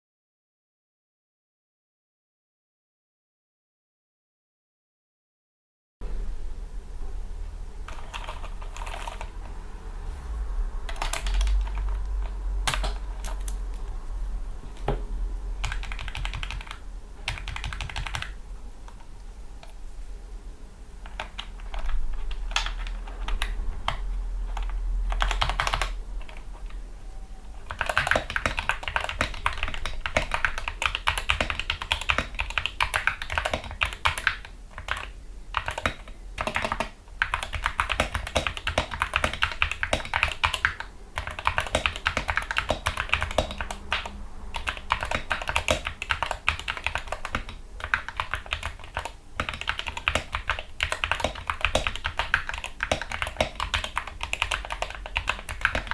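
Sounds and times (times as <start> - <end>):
keyboard typing: 7.9 - 9.6, 10.9 - 14.0, 14.6 - 15.0, 15.6 - 19.8, 21.0 - 26.8, 27.6 - 55.9.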